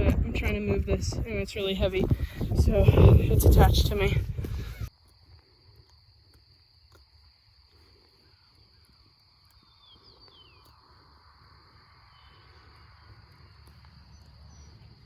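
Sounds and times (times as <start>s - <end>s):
high insect hum: 0.0s - 15.0s
bird chirps: 9.5s - 10.8s.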